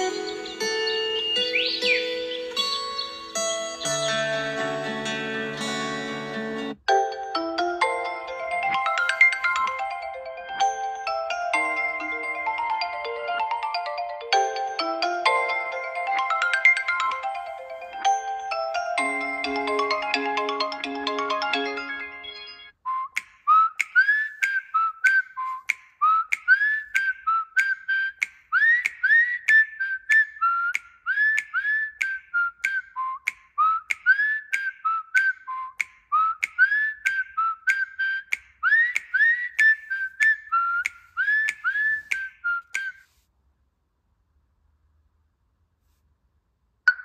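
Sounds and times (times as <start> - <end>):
whistled chirping ringtone: 0.0 - 4.6, 7.0 - 32.9, 33.7 - 43.1
mallet-like melodic ringtone: 6.6 - 22.8.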